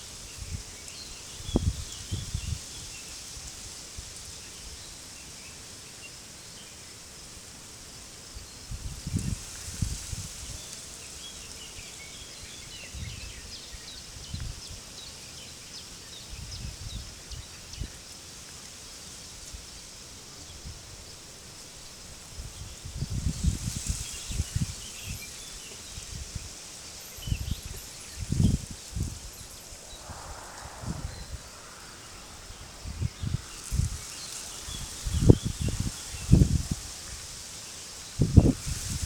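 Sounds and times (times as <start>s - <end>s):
wind gusting against microphone: 0.0s - 4.2s, 12.5s - 14.8s, 16.3s - 18.0s, 22.1s - 39.0s
constant high hiss: 0.0s - 39.0s.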